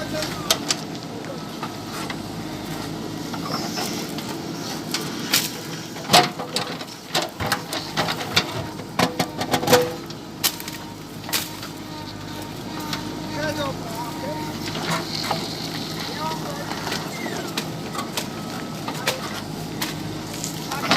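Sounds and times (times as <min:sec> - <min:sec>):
diesel engine running: 0:00.0 - 0:20.9
branches cracking and snapping: 0:04.9 - 0:05.6, 0:10.0 - 0:13.1.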